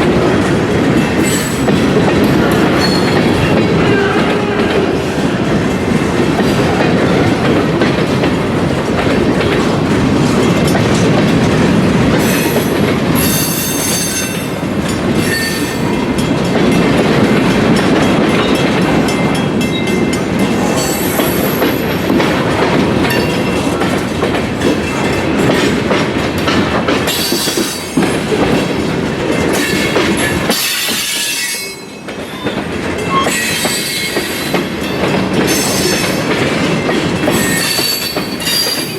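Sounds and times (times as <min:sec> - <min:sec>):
train rumbling past: 0:00.0 - 0:38.9
wheels clacking over rail joints: 0:00.0 - 0:38.9
high wheel squeal: 0:33.1 - 0:34.5.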